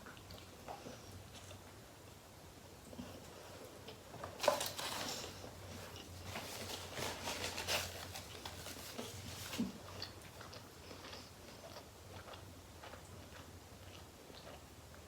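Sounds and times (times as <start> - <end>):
crackly rustling and clicks: 3.8 - 10.3
eating noises: 9.1 - 15.0.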